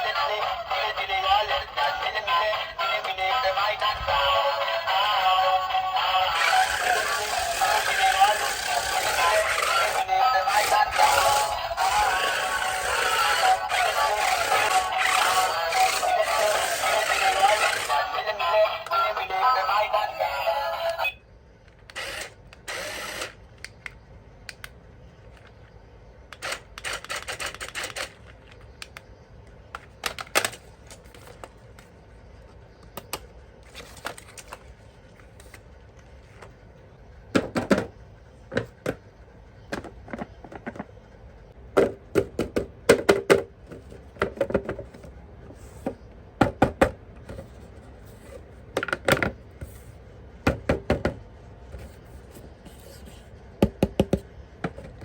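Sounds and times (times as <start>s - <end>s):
plastic toy parts clicking: 26.3s - 29.0s, 29.7s - 31.5s.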